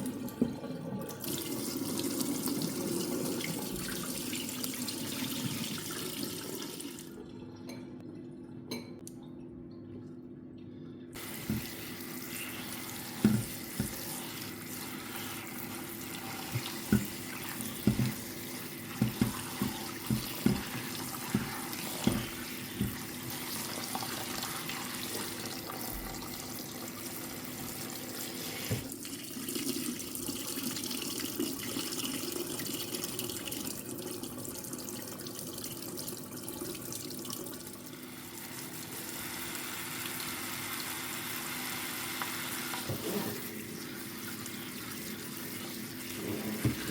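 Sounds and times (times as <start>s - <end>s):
faucet running into sink: 0.0s - 7.3s, 11.2s - 46.9s
kitchenware clinking: 8.7s - 9.0s.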